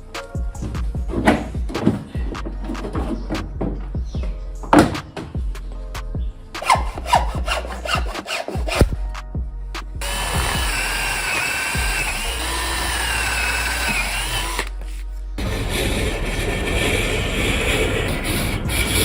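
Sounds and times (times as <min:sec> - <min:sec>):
power tool whining: 0:10.0 - 0:19.0.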